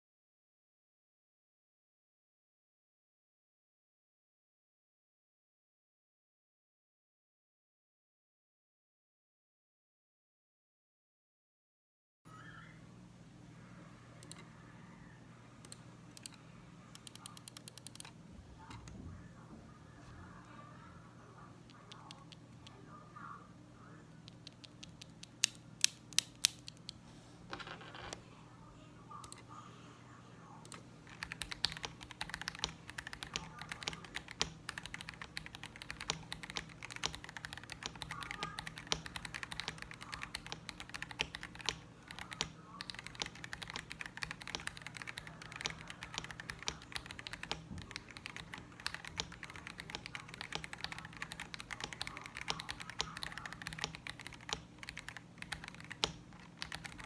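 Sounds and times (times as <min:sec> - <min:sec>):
mechanical keyboard typing: 0:17.0 - 0:18.1, 0:30.7 - 0:57.0.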